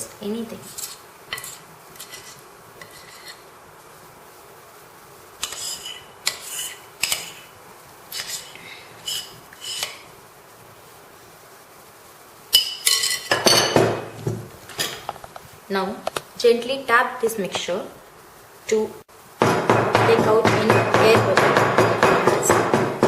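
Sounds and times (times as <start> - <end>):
utensil scraping mixing bowl: 0.6 - 3.4, 5.4 - 7.5, 8.1 - 10.0
dishes clattering: 12.6 - 14.1.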